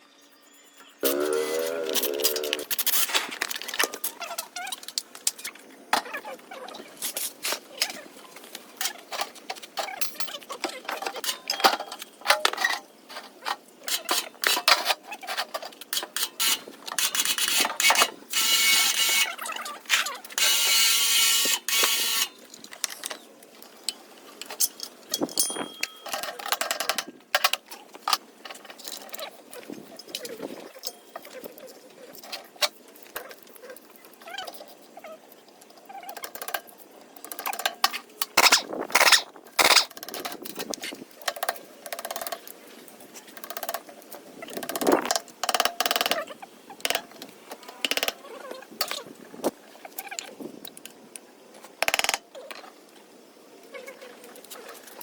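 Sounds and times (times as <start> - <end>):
tool whirring: 16.4 - 19.3, 20.4 - 22.4.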